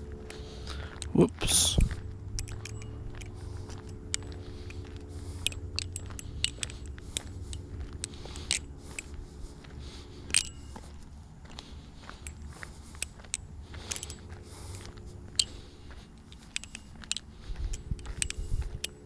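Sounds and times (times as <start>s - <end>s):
steady low hum: 0.0s - 19.0s
butterfly knife metallic clicks: 2.3s - 4.8s, 5.4s - 9.1s, 16.4s - 19.0s.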